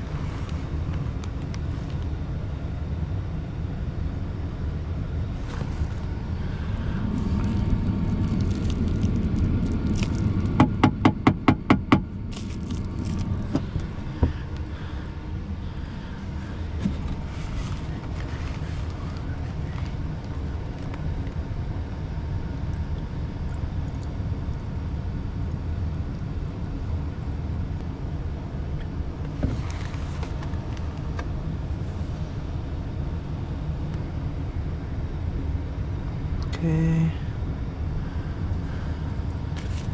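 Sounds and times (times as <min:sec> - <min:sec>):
wet dry vacuum running: 0:04.4 - 0:21.3.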